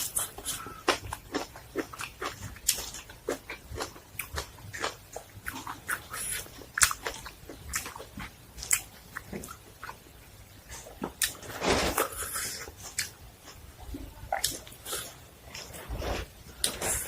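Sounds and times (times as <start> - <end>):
crunching and chewing: 0.0 - 10.1, 10.7 - 13.6.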